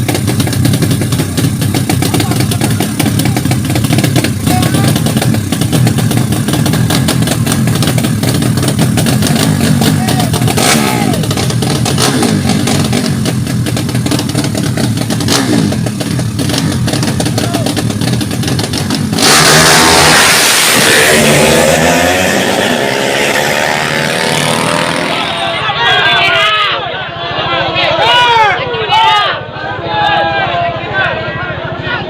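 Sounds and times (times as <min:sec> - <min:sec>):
small motorcycle engines revving: 0:00.0 - 0:25.7
voices: 0:01.7 - 0:05.8, 0:09.6 - 0:13.0, 0:17.1 - 0:18.1, 0:24.8 - 0:32.0.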